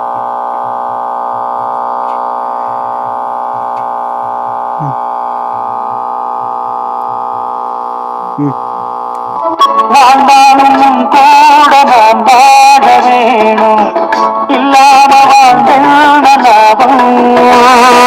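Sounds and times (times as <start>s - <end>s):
music through horn loudspeaker: 9.3s - 18.0s.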